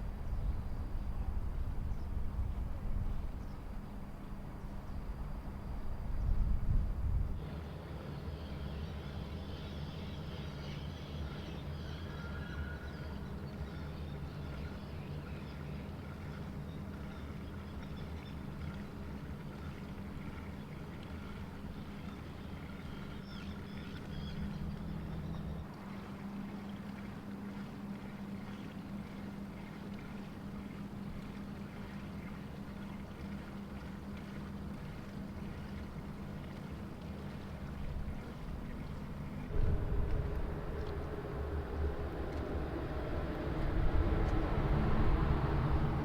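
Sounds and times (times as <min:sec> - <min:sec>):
diesel engine droning: 0:39.4 - 0:46.0.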